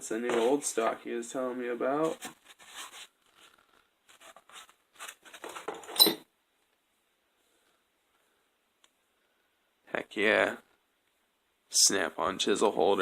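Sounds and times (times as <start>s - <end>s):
rustling and scraping of tools: 2.0s - 6.3s.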